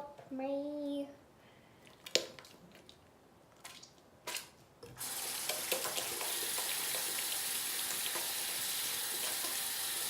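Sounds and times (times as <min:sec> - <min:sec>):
sink tap running: 0:05.0 - 0:10.0.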